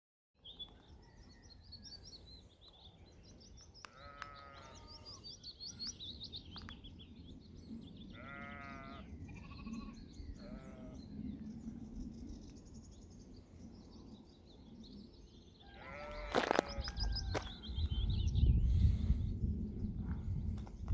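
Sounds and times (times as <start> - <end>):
small birds chirping: 2.2 - 20.9
sheep bleating: 3.8 - 5.2, 8.2 - 11.0, 15.7 - 16.8.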